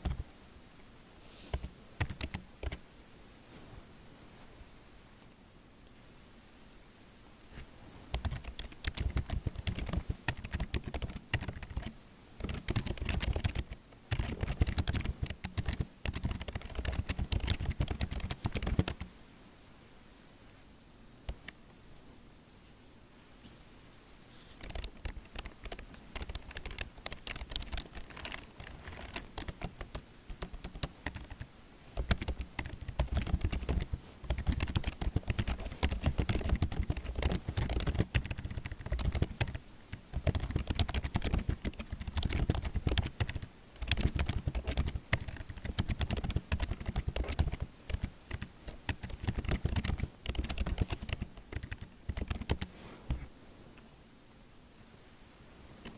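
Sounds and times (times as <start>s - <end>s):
keyboard typing: 0.0s - 0.3s, 1.5s - 2.8s, 8.1s - 19.1s, 24.6s - 53.2s.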